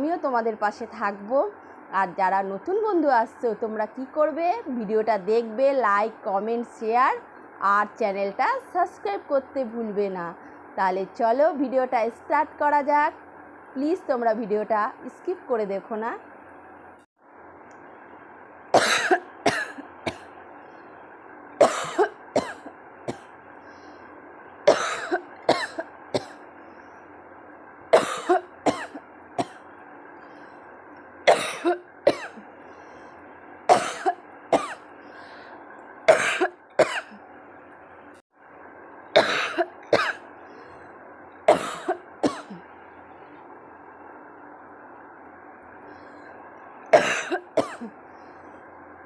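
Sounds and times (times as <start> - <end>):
steady background hum: 0.0 - 49.0
woman coughing: 18.8 - 20.3, 21.6 - 23.2, 24.7 - 26.4, 28.0 - 29.6, 31.3 - 32.4, 33.7 - 34.8, 36.1 - 37.2, 39.2 - 40.2, 41.5 - 42.6, 47.0 - 48.0.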